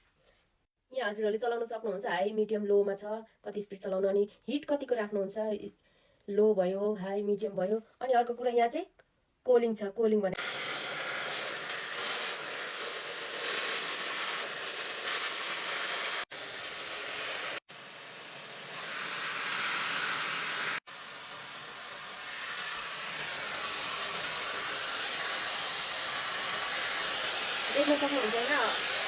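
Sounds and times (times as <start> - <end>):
hair dryer blowing: 10.4 - 29.0.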